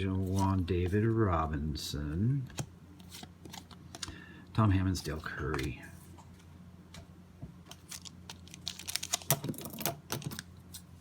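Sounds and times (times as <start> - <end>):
low electrical hum: 0.0 - 11.0
cards clicking and rustling: 2.4 - 4.2, 4.9 - 5.8, 7.7 - 10.8.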